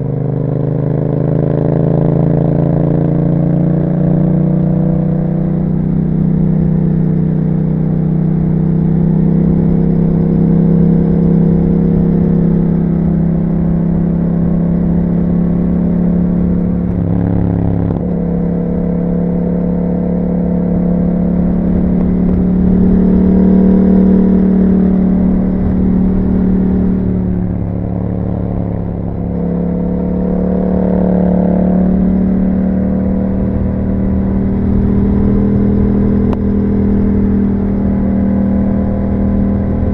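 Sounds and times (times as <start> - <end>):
motorcycle engine riding: 0.0 - 39.9.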